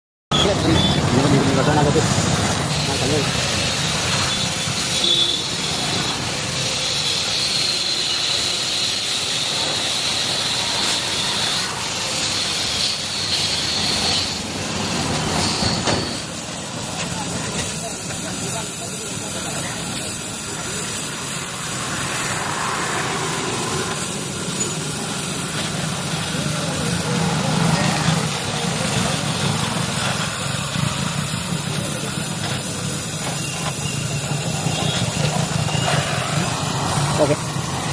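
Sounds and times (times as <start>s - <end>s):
welding arc hissing: 0.4s - 37.9s.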